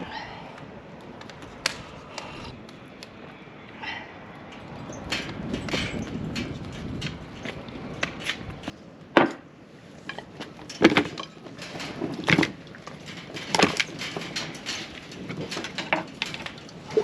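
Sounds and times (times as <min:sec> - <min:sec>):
objects knocking and clattering: 0:10.1 - 0:17.0.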